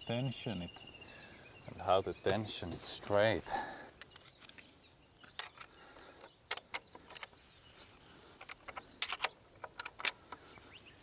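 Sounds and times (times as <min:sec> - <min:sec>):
faint bird chirps: 0:00.0 - 0:09.3
hand tools clicking and clacking: 0:04.0 - 0:07.4, 0:08.4 - 0:10.3.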